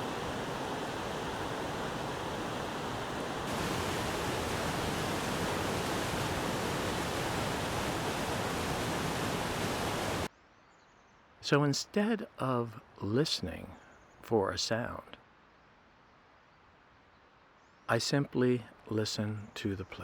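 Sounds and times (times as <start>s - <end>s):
flowing water: 0.0s - 10.3s.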